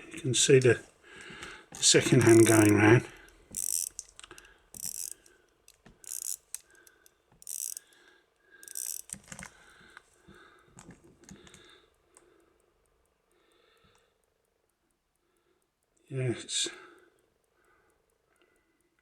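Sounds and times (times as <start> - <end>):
pocket watch winding ratchet clicks: 1.8 - 9.7.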